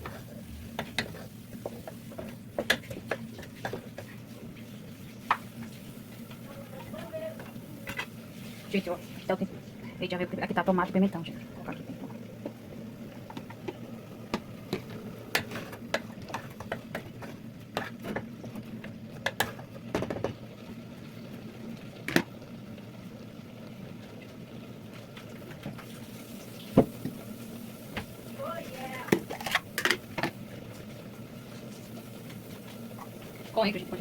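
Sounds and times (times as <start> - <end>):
spoon stirring and scraping in pan: 0.0 - 9.7, 10.8 - 20.6, 29.0 - 34.0.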